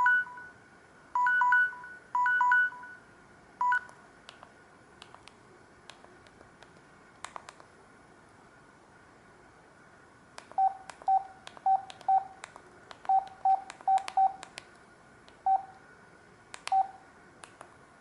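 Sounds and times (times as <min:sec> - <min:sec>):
phone key beeps: 0:01.2 - 0:03.0, 0:03.6 - 0:03.9, 0:10.6 - 0:12.4, 0:13.1 - 0:14.4, 0:16.7 - 0:17.0.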